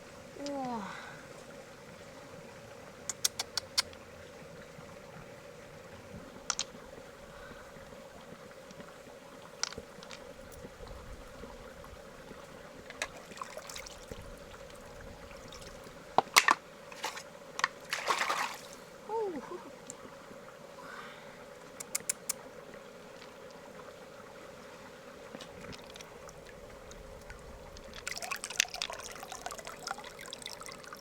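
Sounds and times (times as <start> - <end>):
faint steady hum: 0.0 - 31.0
small hard objects clicking: 6.5 - 6.8, 9.6 - 10.3.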